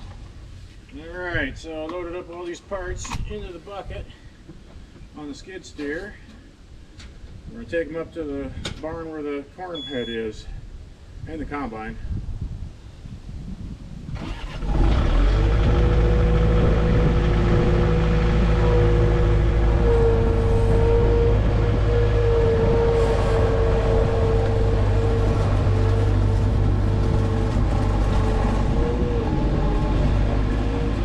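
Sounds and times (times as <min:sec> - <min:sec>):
skid steer engine running: 0:14.6 - 0:31.0
high whine: 0:15.5 - 0:31.0.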